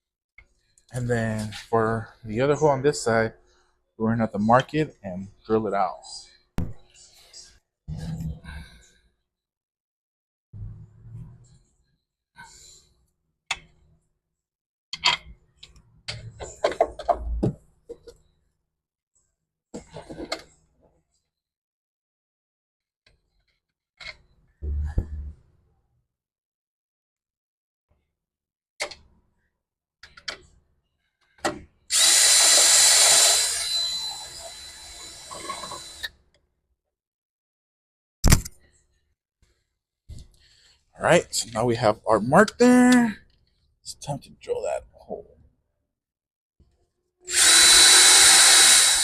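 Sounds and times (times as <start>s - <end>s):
power drill whining: 31.9s - 36.2s, 47.3s - 49.0s.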